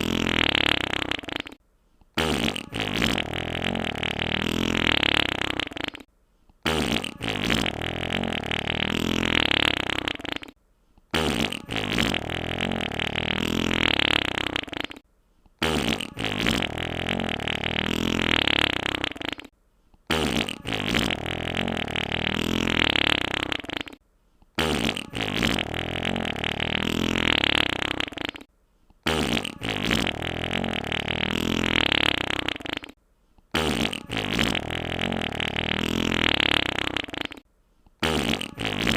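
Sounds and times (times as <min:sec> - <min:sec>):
wet fart sound effect: 0:00.0 - 0:01.6, 0:02.2 - 0:15.0, 0:15.6 - 0:19.5, 0:20.1 - 0:24.0, 0:24.6 - 0:37.4, 0:38.0 - 0:38.9.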